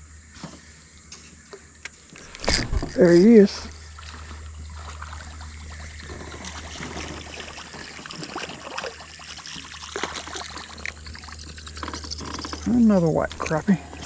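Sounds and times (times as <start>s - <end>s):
steady low hum: 0.0s - 14.0s
light ticks and handling noise: 0.4s - 4.5s, 10.0s - 14.0s
water trickling and splashing: 2.2s - 14.0s.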